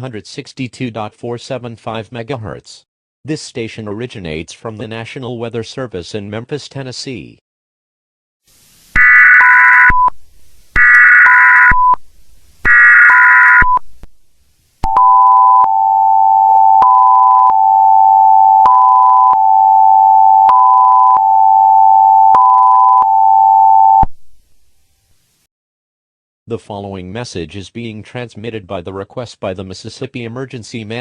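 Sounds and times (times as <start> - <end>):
higher pulsing beep: 10.8 - 12.0, 12.6 - 13.8
steady two-tone attention signal: 14.9 - 24.1.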